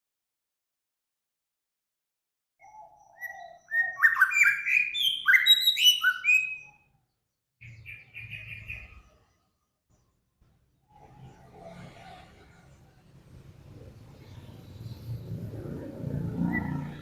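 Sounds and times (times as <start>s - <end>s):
bird rapid trill: 2.6s - 6.9s, 7.6s - 9.4s
songbird whistled notes: 2.6s - 6.9s.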